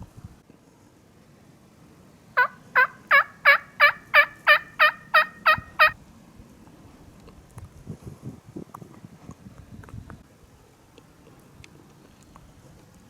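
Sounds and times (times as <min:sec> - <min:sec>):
turkey yelping: 0:02.4 - 0:06.0.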